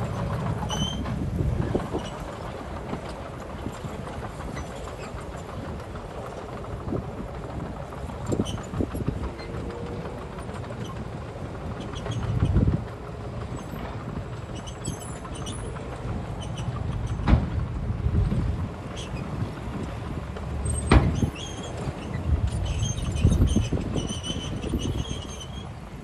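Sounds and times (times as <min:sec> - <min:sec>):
heavy machinery engine rumbling: 0:00.0 - 0:26.0
metal clanks and knocks: 0:16.4 - 0:18.4, 0:20.7 - 0:21.9.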